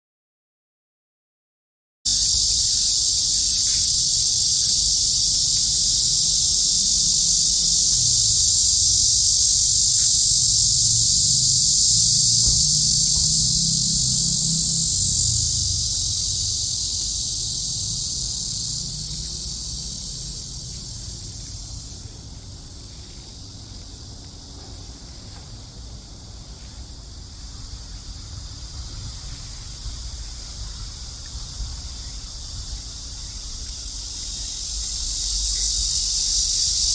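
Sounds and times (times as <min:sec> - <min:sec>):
cicada buzzing: 0:02.1 - 0:36.9
low rumble: 0:05.7 - 0:23.0.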